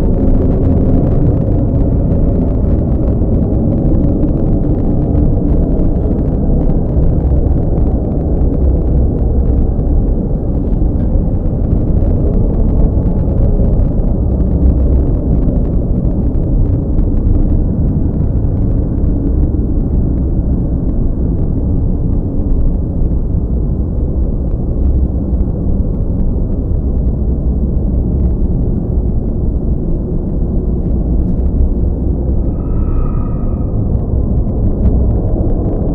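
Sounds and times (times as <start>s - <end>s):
deep rumble: 0.0s - 35.9s.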